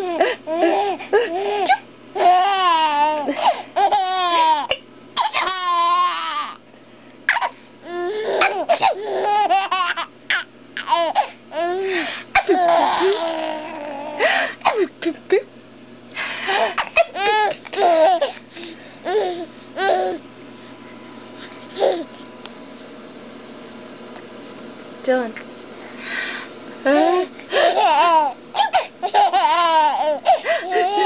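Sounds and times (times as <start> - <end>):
baby laughing: 0.0 - 6.6, 8.3 - 11.8, 12.4 - 14.8, 16.5 - 18.4, 27.0 - 31.0
sneezing: 1.6 - 1.9, 7.3 - 7.6, 14.5 - 14.9, 16.6 - 17.2.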